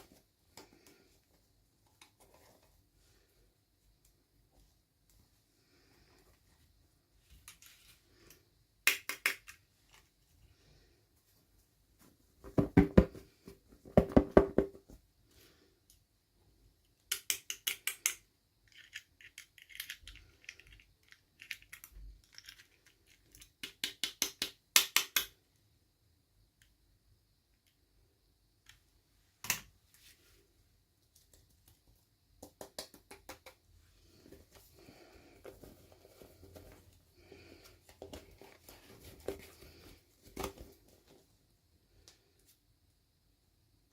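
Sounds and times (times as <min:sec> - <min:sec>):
plastic toy pieces clicking: 0:17.1 - 0:25.4.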